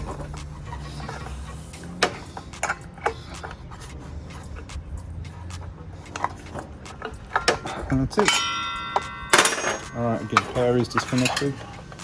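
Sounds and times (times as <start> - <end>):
saw fittings clicking and knocking: 6.1 - 12.0.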